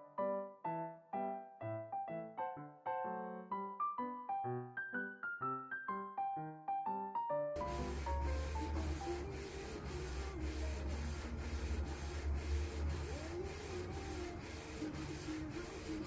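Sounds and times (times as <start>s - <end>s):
printer humming and swishing: 7.6s - 16.0s.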